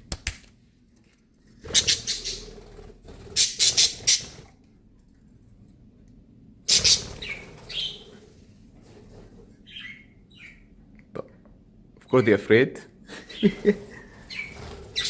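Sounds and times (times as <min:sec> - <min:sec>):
budgies calling harshly: 0:01.7 - 0:02.7, 0:03.4 - 0:04.4, 0:06.7 - 0:08.2, 0:09.6 - 0:10.7, 0:13.3 - 0:15.0.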